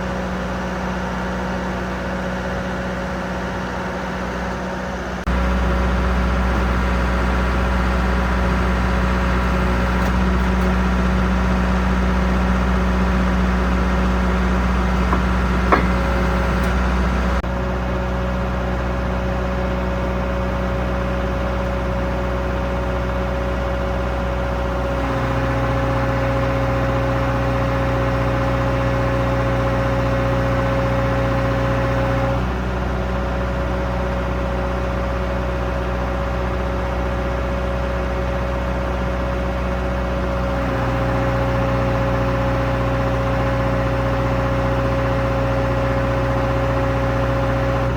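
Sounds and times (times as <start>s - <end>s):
drilling rig humming: 4.4s - 17.4s.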